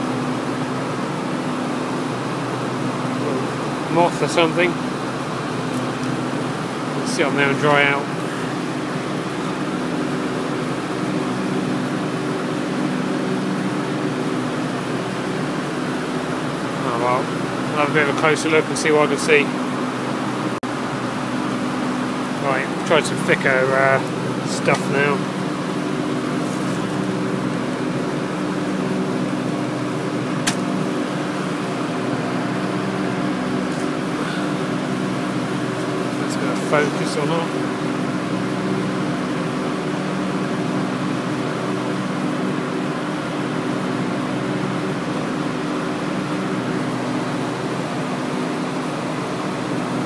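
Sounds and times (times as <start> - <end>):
air conditioner fan rushing: 0.0 - 50.0
sharp click: 30.4 - 30.7.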